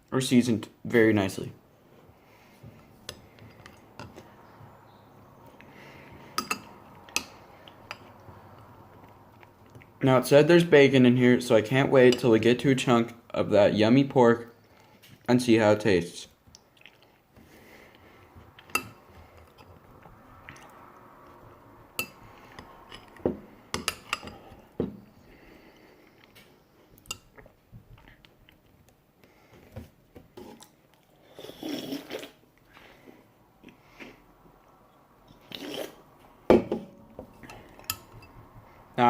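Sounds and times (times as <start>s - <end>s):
chewing: 6.6s - 10.0s, 16.5s - 17.3s, 17.9s - 21.5s.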